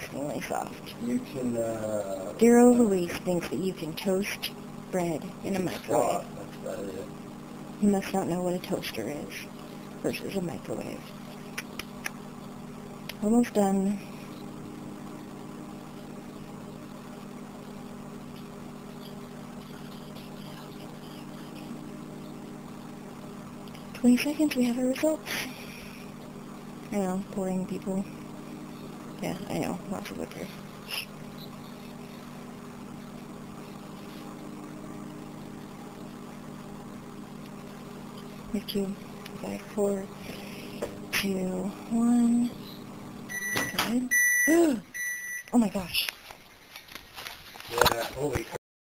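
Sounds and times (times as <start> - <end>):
microwave oven humming: 0.0 - 48.6.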